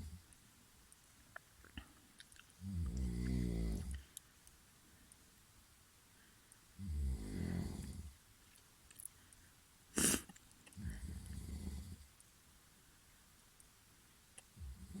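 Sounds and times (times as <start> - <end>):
person snoring: 2.6 - 4.0, 6.8 - 8.1, 10.0 - 12.0.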